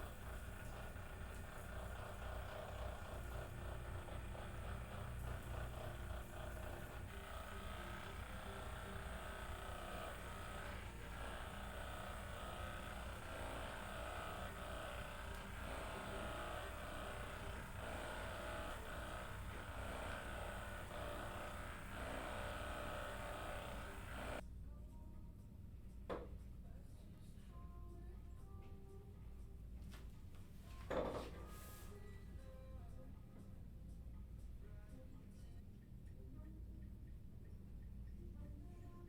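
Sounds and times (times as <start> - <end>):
electric massager motor humming: 0.0 - 24.4.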